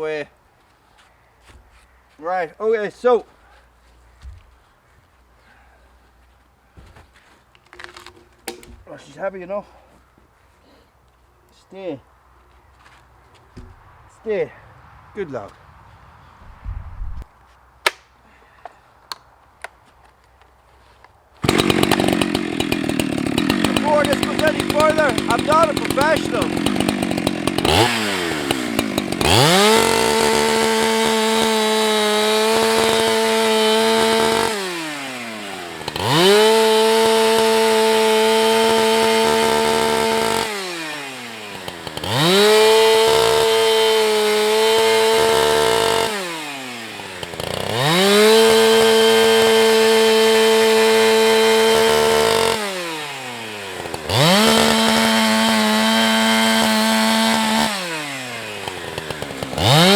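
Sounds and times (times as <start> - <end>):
chainsaw revving: 7.8 - 8.8, 21.4 - 59.9.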